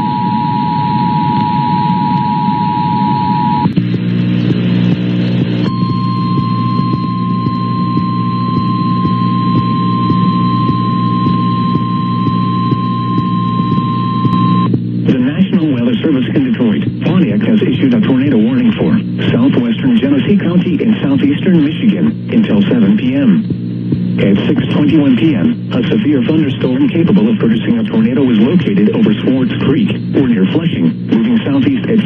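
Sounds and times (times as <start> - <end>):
buzzing hum: 0.0 - 32.0
radio static hiss: 0.0 - 32.0
steady warning tone: 0.0 - 32.0
two-tone alert signal: 5.7 - 14.7.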